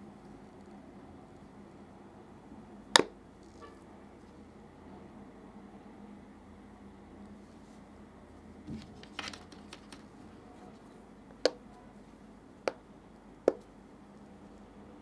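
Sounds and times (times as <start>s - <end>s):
packaging rustling: 8.7s - 10.3s
sharp taps of hard objects: 13.5s - 13.7s.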